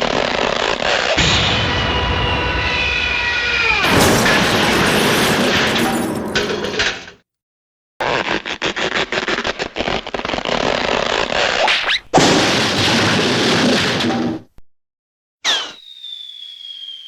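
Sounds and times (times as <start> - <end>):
short rising whistle: 1.2 - 4.1, 15.4 - 17.0
loud blast of noise: 1.2 - 6.8.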